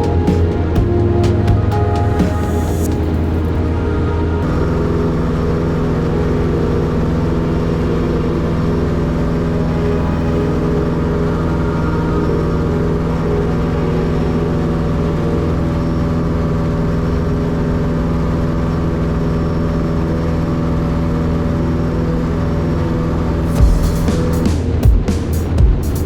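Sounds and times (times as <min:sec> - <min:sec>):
light aircraft engine drone: 0:00.0 - 0:25.4.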